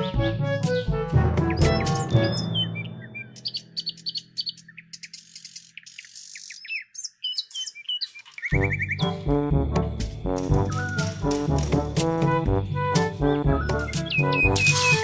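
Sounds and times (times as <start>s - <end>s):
background music: 0.0s - 3.9s, 8.5s - 15.0s
bird-like chirps and tweets: 1.6s - 9.1s.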